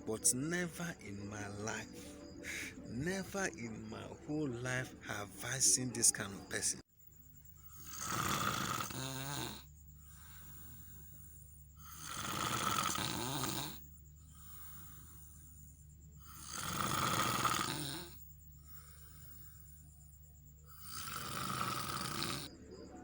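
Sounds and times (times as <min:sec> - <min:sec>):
man snoring loudly: 0:07.6 - 0:20.0, 0:20.7 - 0:22.5.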